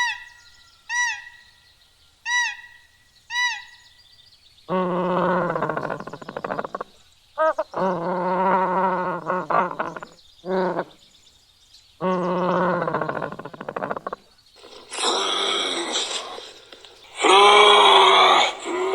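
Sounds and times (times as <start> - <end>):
animal calling: 0.0 - 1.6, 4.7 - 11.0, 12.0 - 18.9.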